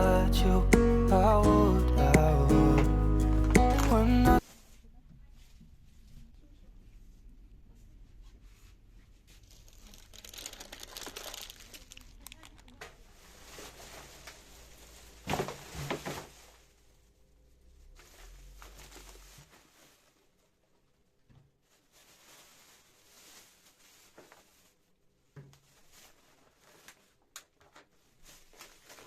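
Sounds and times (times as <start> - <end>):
crinkling and rustling: 2.8 - 29.0.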